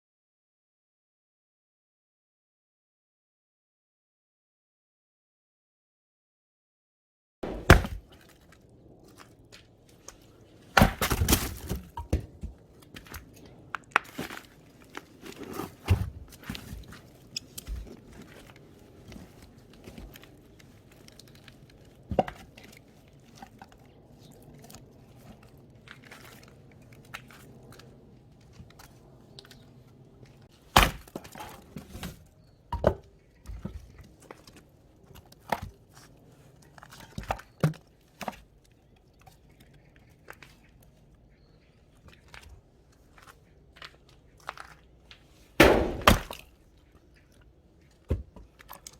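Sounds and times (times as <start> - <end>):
axe chopping wood: 7.4 - 8.1, 10.8 - 12.4, 30.7 - 32.1, 45.6 - 46.5
wood cracking and clattering: 10.7 - 22.8, 45.6 - 46.5.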